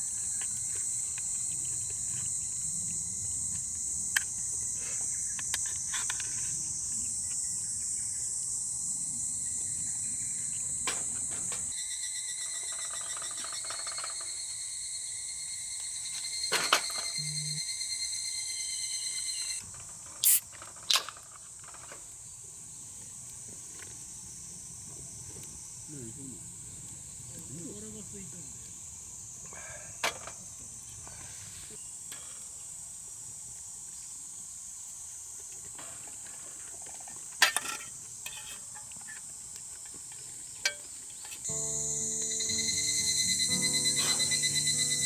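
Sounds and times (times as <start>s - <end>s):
insects singing shrilly: 0.0s - 20.6s, 41.2s - 45.0s.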